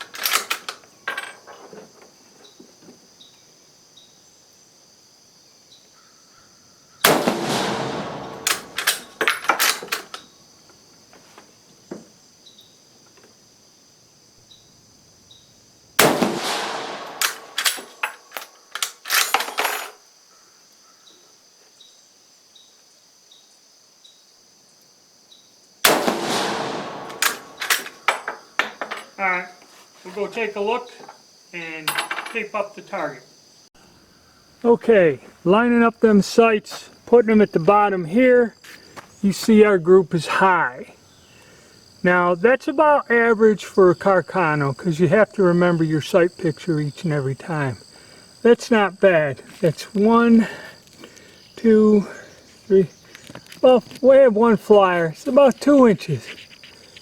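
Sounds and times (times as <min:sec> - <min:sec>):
insects buzzing: 0:00.0 - 0:57.0
rifle shots: 0:07.1 - 0:09.9, 0:16.0 - 0:18.0, 0:25.9 - 0:28.2.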